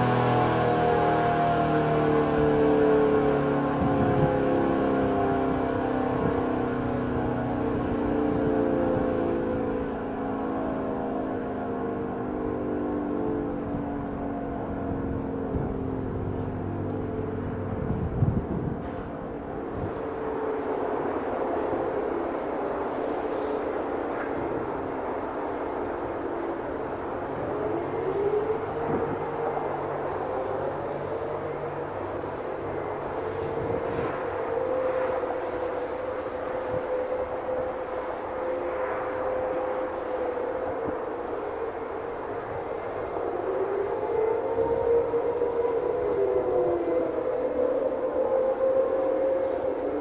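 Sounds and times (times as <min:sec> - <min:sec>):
low steady hum: 0:00.0 - 0:22.0
warning sirens alert tones: 0:00.0 - 0:23.6, 0:25.3 - 0:50.0.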